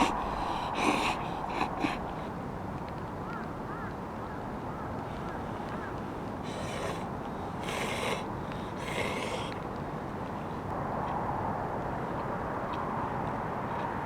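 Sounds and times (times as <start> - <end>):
bird harsh calls: 0.0 - 2.4, 3.2 - 9.6
steady background hiss: 0.0 - 10.7.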